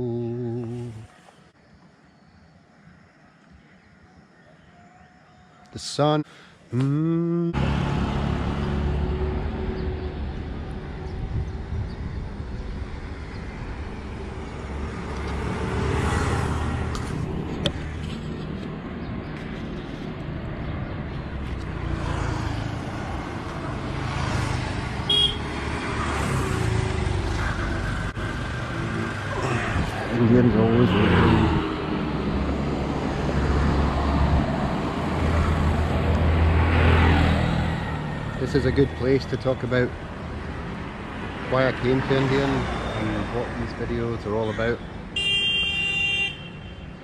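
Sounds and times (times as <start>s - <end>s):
vehicle engines passing: 7.4s - 45.1s
high horn toot: 25.1s - 25.5s, 45.2s - 47.0s.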